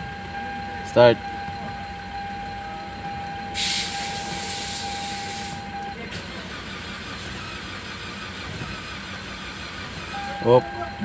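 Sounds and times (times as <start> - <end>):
steady high tone: 10.1 - 11.0.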